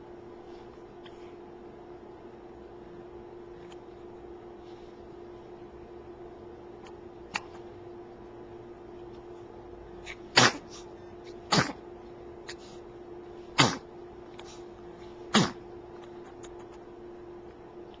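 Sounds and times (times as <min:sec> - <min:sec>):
short sudden sneezes: 0:10.1 - 0:10.9, 0:11.5 - 0:11.8, 0:13.6 - 0:13.8, 0:15.3 - 0:15.6.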